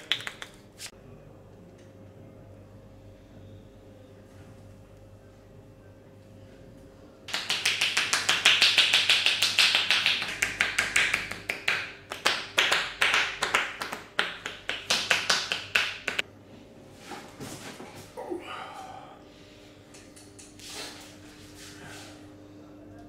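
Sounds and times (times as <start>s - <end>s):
hands slapping body: 7.3s - 16.2s.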